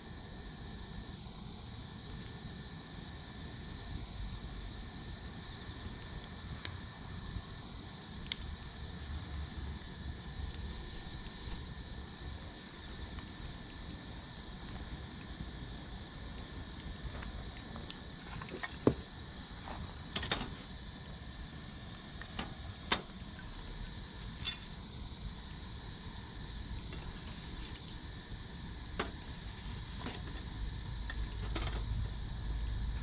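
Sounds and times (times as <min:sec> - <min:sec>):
high insect drone: 0:00.0 - 0:33.0
insects chirping: 0:00.0 - 0:33.0
wood fire crackling: 0:00.0 - 0:33.0
low steady rumble: 0:15.8 - 0:33.0.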